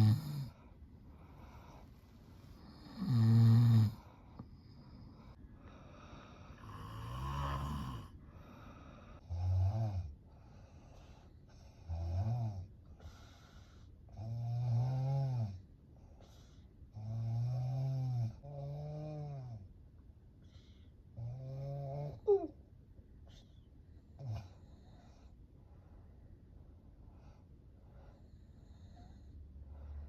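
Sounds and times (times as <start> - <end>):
person snoring heavily: 0.0 - 0.5, 2.7 - 4.0, 6.6 - 8.1.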